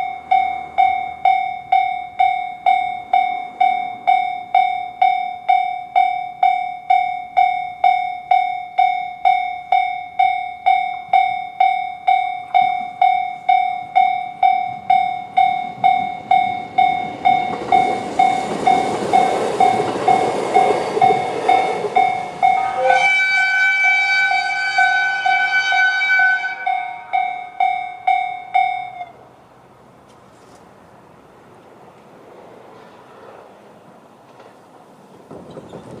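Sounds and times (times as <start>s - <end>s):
level-crossing electronic bell: 0.0s - 23.1s, 26.5s - 29.1s
electric train rumble: 0.0s - 36.0s.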